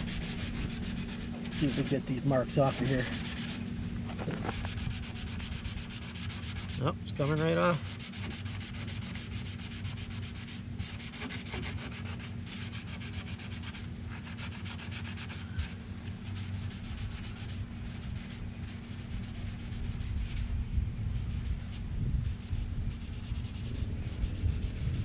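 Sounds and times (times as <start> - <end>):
low hum: 0.0 - 7.1
rubbing polish on metal: 0.0 - 25.0.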